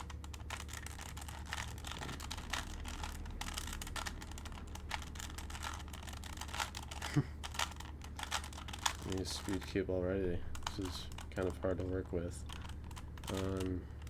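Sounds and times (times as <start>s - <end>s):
puzzle cube layers clicking: 0.0s - 9.7s
steady low hum: 0.0s - 14.0s.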